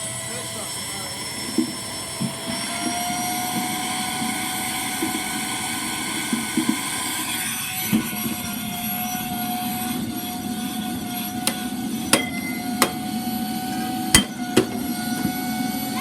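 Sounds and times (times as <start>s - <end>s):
vacuum cleaner motor hum: 0.0s - 16.0s
sharp knocks: 11.4s - 13.1s, 14.1s - 15.4s.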